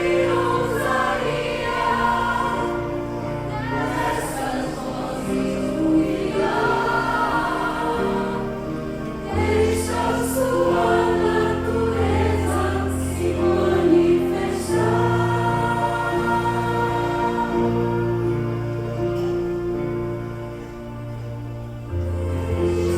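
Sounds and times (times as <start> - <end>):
choir singing chords: 0.0 - 22.9.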